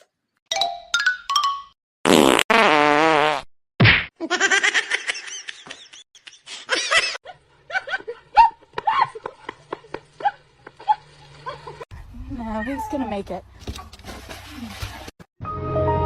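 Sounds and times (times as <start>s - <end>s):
people laughing: 4.4s - 11.8s.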